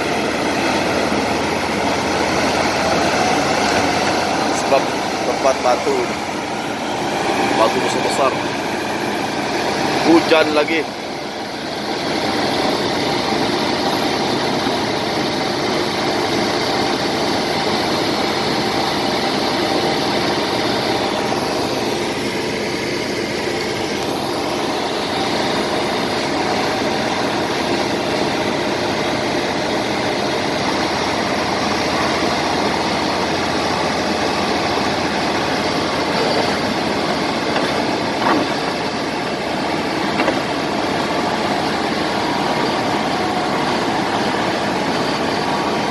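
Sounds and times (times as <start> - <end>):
bulldozer diesel engines running: 0.0 - 45.9.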